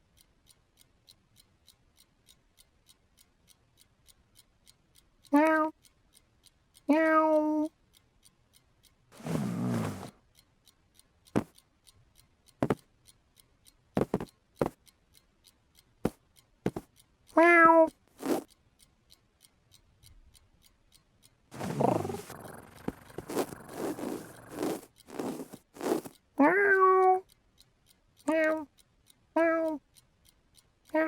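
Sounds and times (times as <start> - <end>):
faint regular ticking: 0.0 - 31.0
sharp taps and thumps: 9.2 - 10.1, 12.6 - 12.8, 14.0 - 14.8, 16.1 - 16.9, 18.2 - 18.5, 21.6 - 26.2
longer voiced sound: 17.4 - 17.9, 26.4 - 27.2, 28.3 - 28.7, 29.4 - 29.8.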